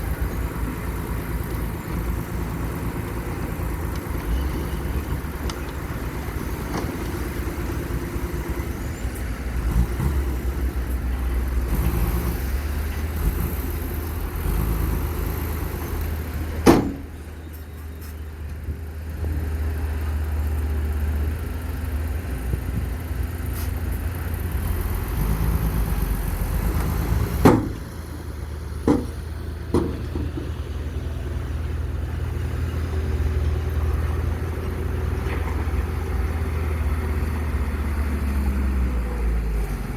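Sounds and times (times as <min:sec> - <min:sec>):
model construction machines droning: 0:00.0 - 0:39.9
sharp knocks: 0:27.4 - 0:27.8, 0:28.8 - 0:30.6.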